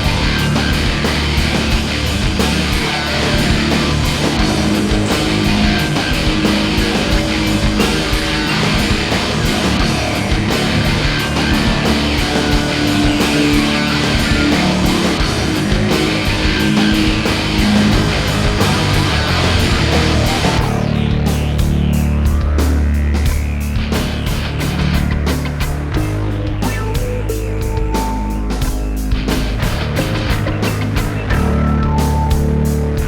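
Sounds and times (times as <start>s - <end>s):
heavy metal rock music: 0.0s - 33.0s.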